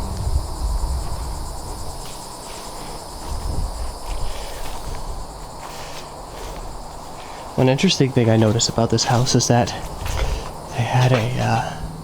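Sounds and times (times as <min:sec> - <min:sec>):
low rumble: 0:00.0 - 0:02.3
insects buzzing: 0:00.0 - 0:12.0.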